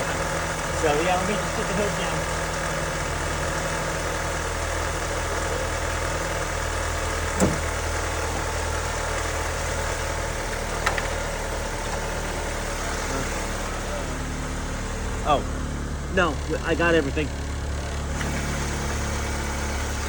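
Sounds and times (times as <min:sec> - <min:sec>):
car engine idling: 0:00.0 - 0:20.0
thump: 0:07.4 - 0:07.8.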